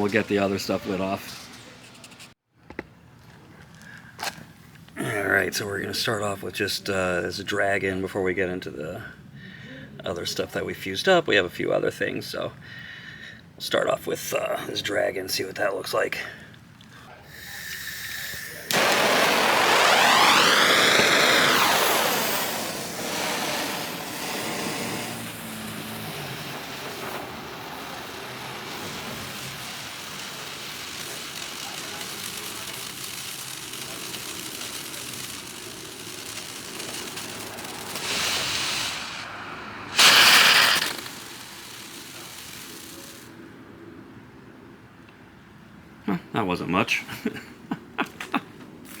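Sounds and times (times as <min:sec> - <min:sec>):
firework whoosh: 0:00.0 - 0:01.7, 0:18.5 - 0:43.4
firework hissing sparks: 0:00.0 - 0:02.4, 0:17.3 - 0:43.4.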